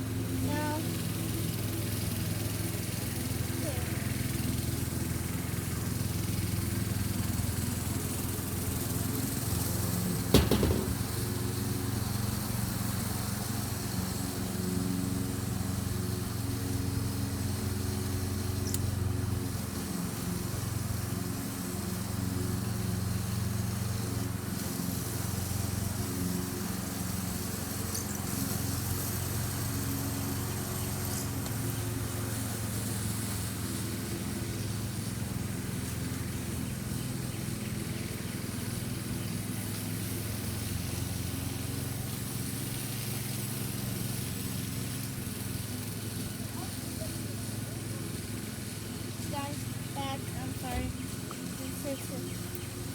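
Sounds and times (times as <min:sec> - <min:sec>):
low motor-like hum: 0:43.7 - 0:52.9.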